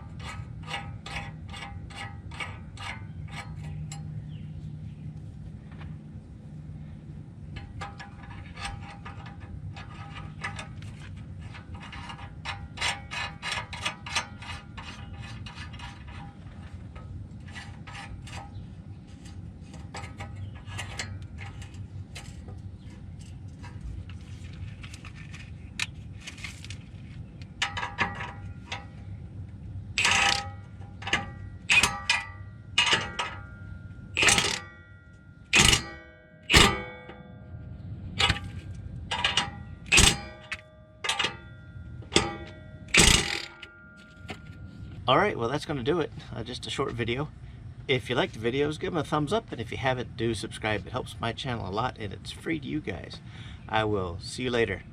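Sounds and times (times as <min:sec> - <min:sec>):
ratchet wrench clicking: 0:30.0 - 0:30.4
loud metallic clanks ringing: 0:30.0 - 0:44.8.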